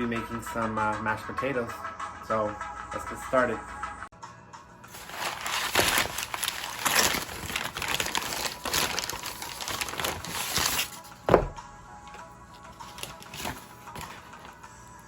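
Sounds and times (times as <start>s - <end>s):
crinkling and rustling: 4.9s - 14.6s.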